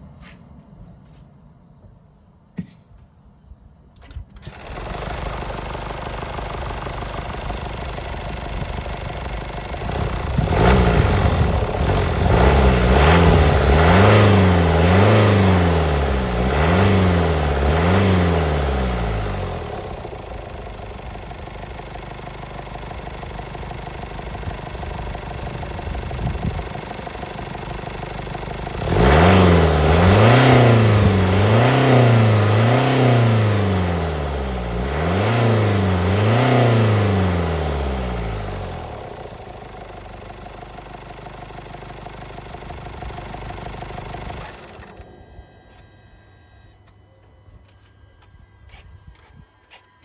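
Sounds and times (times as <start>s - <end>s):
diesel engine starting and idling: 4.0s - 46.8s
diesel engine revving: 4.5s - 45.2s.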